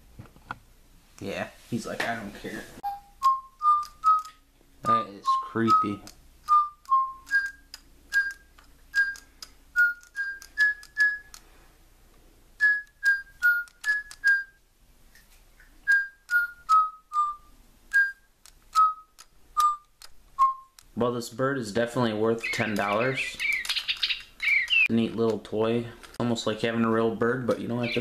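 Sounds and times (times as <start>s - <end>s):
toy bird chirping whistle notes: 2.8s - 11.4s, 12.6s - 14.6s, 15.8s - 20.8s, 22.4s - 24.9s.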